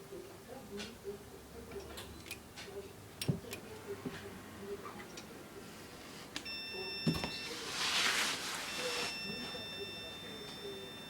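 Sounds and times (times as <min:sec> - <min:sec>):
steady electronic beep: 0:08.6 - 0:11.0.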